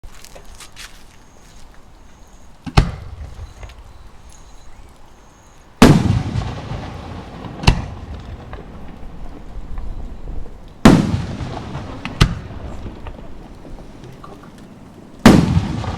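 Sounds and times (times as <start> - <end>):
firework shells bursting: 5.8 - 15.9.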